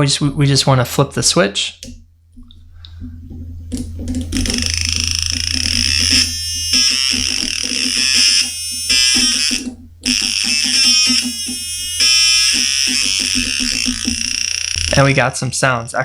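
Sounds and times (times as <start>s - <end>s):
harsh buzzy electronic tone: 3.8s - 15.4s.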